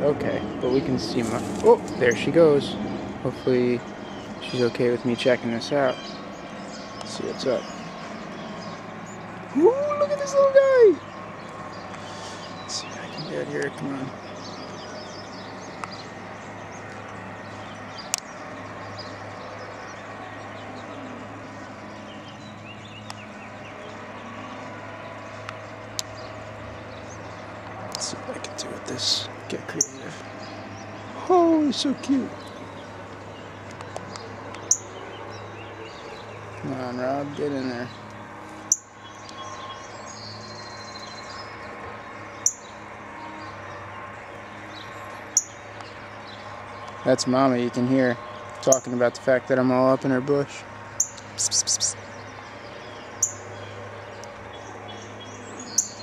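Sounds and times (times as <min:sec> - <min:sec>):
faint bird calls: 0:05.7 - 0:47.2.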